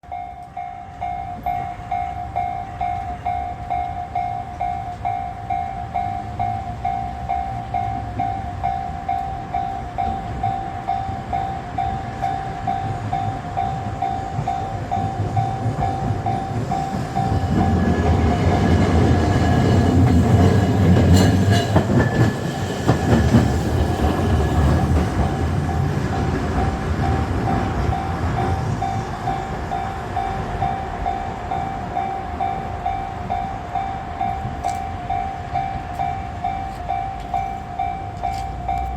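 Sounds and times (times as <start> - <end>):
level-crossing warning bell ringing: 0.0 - 38.9
trams rumbling past: 0.0 - 38.9
wheels clacking over rails: 14.4 - 33.4.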